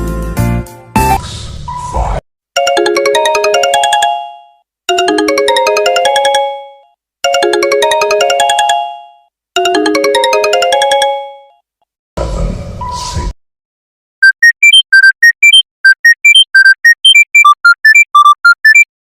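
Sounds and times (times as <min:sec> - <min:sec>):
smartphone ringtone melody: 0:02.6 - 0:11.6.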